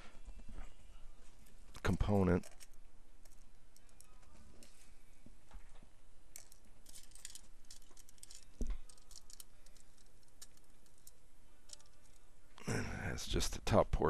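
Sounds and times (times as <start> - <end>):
small metal parts clinking: 2.4 - 4.3, 6.3 - 12.2.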